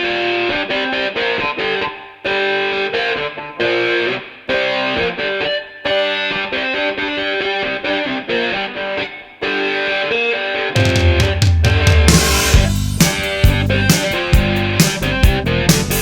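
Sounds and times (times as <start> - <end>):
distorted electric guitar riff: 0.0 - 16.0
drums and bass: 10.8 - 16.0.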